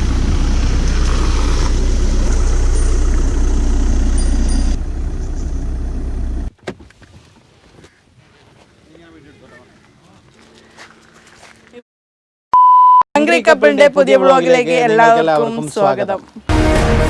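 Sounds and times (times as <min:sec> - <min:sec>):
engine rumbling: 0:00.0 - 0:06.6, 0:16.5 - 0:17.0.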